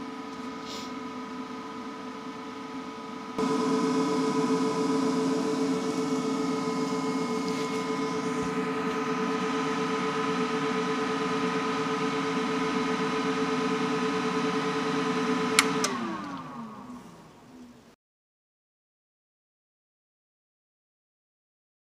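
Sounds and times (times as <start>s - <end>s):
welder arc hiss and whine: 3.4s - 14.0s.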